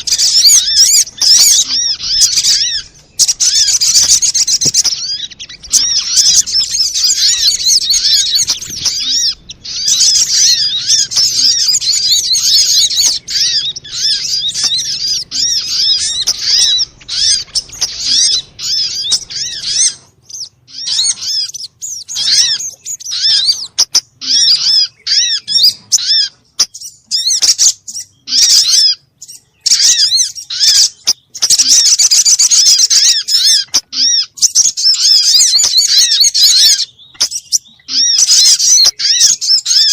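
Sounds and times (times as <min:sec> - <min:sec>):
bird chirps and trills: 0:00.0 - 0:39.9.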